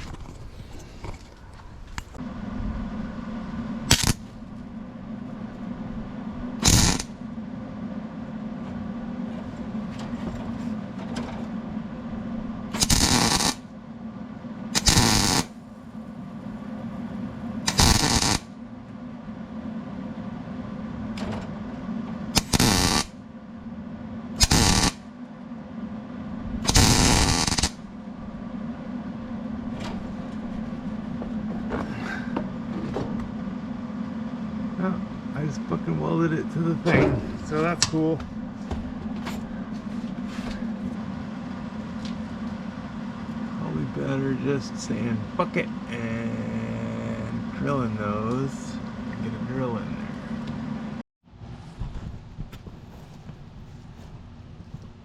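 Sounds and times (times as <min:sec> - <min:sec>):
welder hum: 0:00.0 - 0:07.7, 0:11.4 - 0:23.8, 0:24.4 - 0:25.2, 0:26.4 - 0:51.0
welding arc crackling: 0:03.9 - 0:04.4, 0:06.6 - 0:07.2, 0:12.7 - 0:13.7, 0:14.7 - 0:16.5, 0:17.6 - 0:18.5, 0:22.3 - 0:23.2, 0:24.4 - 0:25.0, 0:26.6 - 0:27.9.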